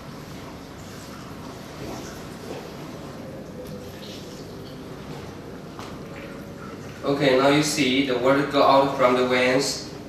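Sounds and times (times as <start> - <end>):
water trickling through a funnel: 0.0 - 7.8.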